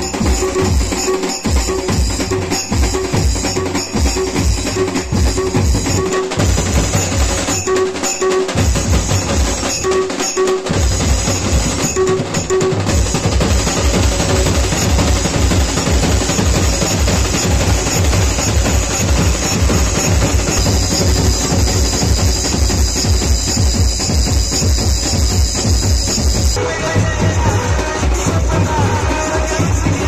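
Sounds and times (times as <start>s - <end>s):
fast bass drum beat: 0.0s - 30.0s.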